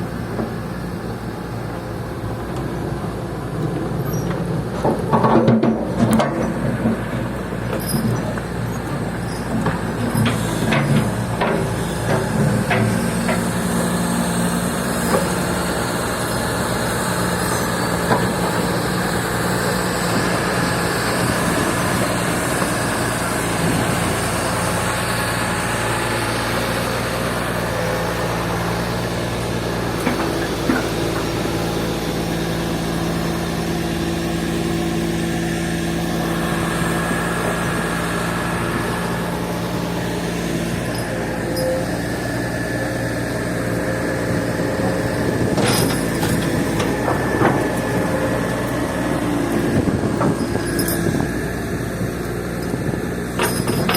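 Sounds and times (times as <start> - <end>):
diesel engine running: 0.0 - 53.9
metal clanks: 53.4 - 53.9.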